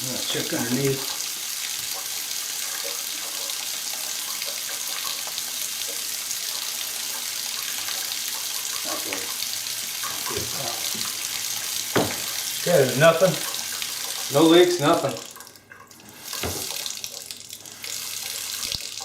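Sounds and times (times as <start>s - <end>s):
faucet running water into sink: 0.0s - 19.0s
faint knocks: 11.9s - 12.4s.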